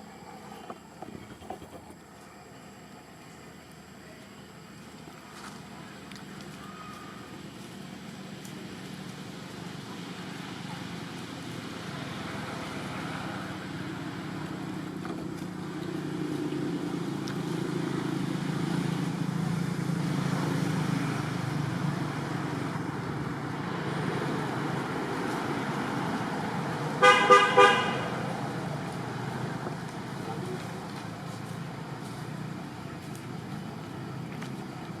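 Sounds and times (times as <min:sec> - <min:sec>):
vehicle engine passing: 0:06.4 - 0:35.0
car horn honking: 0:27.0 - 0:28.1.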